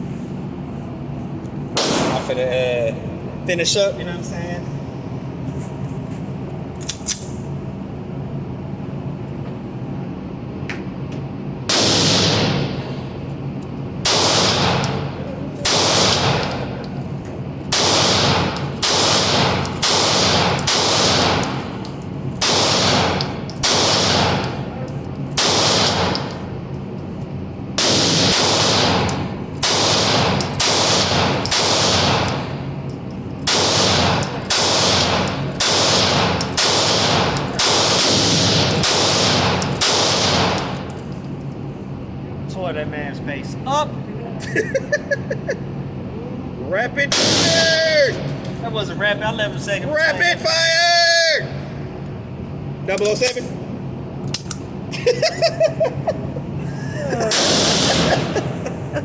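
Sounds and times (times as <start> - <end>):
steady background noise: 0.0 - 59.0
pistol shots echoing: 1.8 - 2.3, 11.7 - 12.7, 14.1 - 16.6, 17.7 - 21.6, 22.4 - 24.5, 25.4 - 26.3, 27.8 - 32.6, 33.5 - 40.8, 47.2 - 47.7, 57.3 - 58.4.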